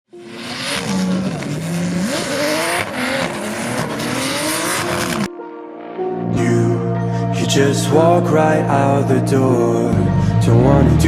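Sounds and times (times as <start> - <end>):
car engine revving: 0.1 - 5.3.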